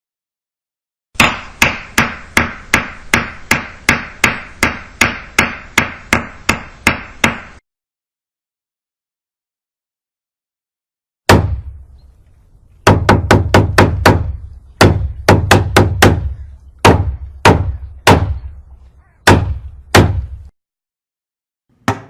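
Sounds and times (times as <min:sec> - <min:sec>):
hammer striking: 0:01.2 - 0:07.6, 0:12.9 - 0:18.5, 0:19.3 - 0:20.5, 0:21.7 - 0:22.0.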